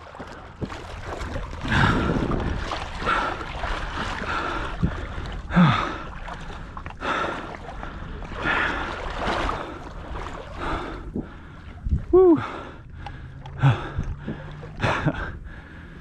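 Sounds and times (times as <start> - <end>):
wading through water: 0.0 - 16.0.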